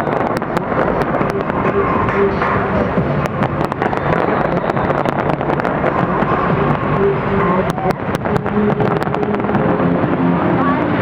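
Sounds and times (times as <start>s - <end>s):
fireworks cracking: 0.0s - 11.0s
loud constant din: 0.0s - 11.0s.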